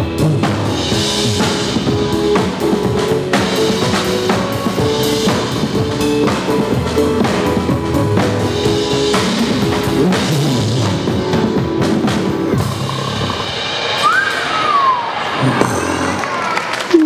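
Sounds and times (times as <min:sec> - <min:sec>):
pop song backing track: 0:00.0 - 0:13.4
drum kit playing: 0:00.0 - 0:16.6.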